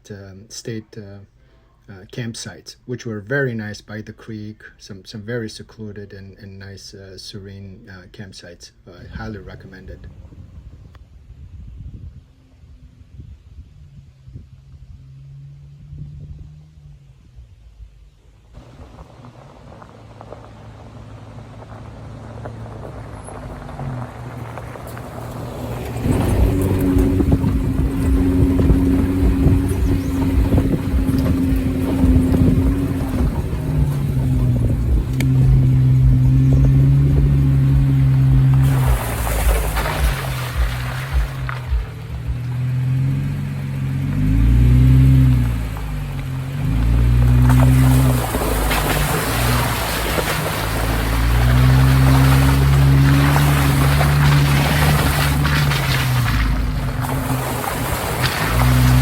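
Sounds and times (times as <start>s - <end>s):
car engine running: 9.0s - 59.0s
low thumps: 25.4s - 59.0s.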